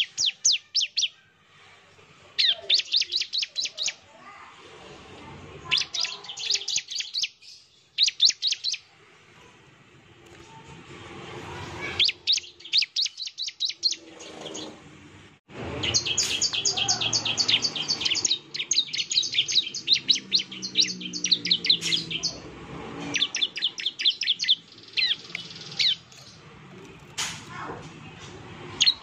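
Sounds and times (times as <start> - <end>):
bird singing rapid high chips: 0.0 - 1.2, 2.4 - 4.0, 5.7 - 8.9, 12.0 - 14.6, 15.8 - 26.5, 28.8 - 29.0.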